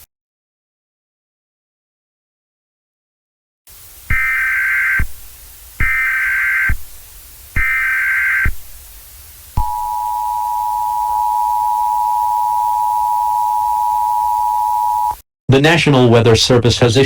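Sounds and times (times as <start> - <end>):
digital data tone bursts: 4.1 - 5.2, 5.8 - 6.8, 7.6 - 8.6, 9.6 - 15.2
two-tone alert signal: 9.6 - 15.2.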